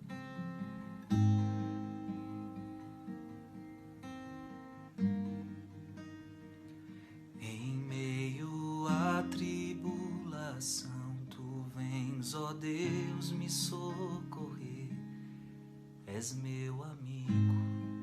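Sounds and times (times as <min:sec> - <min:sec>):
acoustic guitar chords: 0:00.0 - 0:18.0
person singing: 0:07.4 - 0:15.1, 0:16.1 - 0:18.0.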